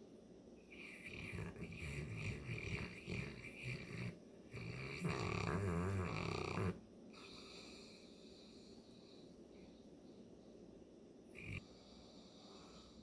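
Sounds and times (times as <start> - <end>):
dog snoring: 0.7 - 8.6, 11.4 - 13.0.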